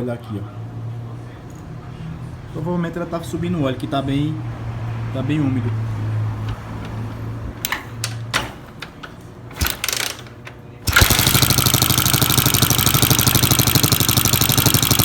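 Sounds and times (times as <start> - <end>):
clicks and knocks: 6.4 - 12.9
motorcycle engine running: 9.5 - 15.0.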